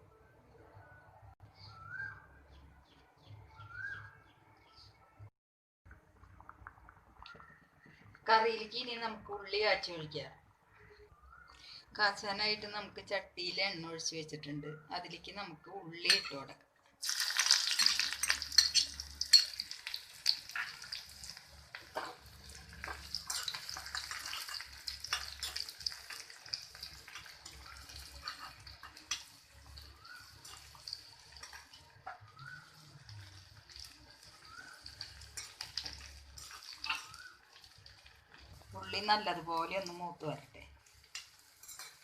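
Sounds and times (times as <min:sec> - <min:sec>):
spoon stirring against a pan: 0:17.0 - 0:40.0, 0:40.8 - 0:42.0
onions sizzling in a pan: 0:17.0 - 0:40.2, 0:40.8 - 0:42.0.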